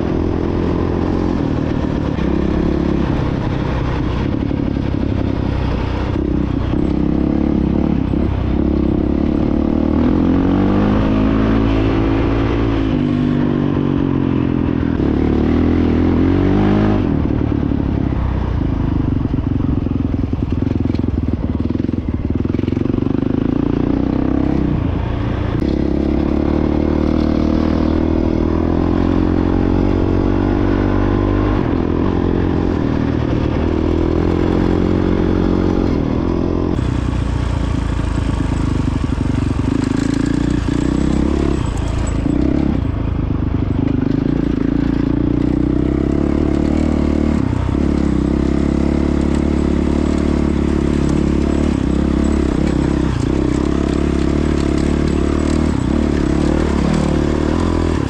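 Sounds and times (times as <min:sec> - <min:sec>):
dirt bike engine revving: 0:25.4 - 0:43.0, 0:43.7 - 0:58.0
bike rattling over rough ground: 0:43.7 - 0:58.0.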